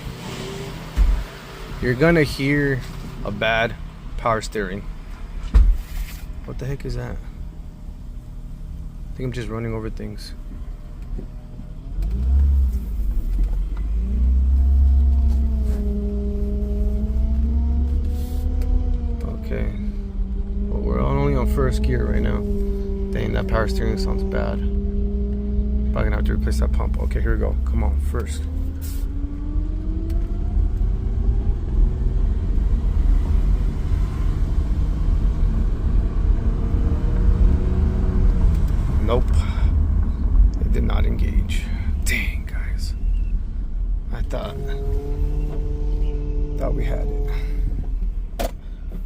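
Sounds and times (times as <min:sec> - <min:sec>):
car engine accelerating: 0:00.0 - 0:49.0
steady whine: 0:06.2 - 0:33.5.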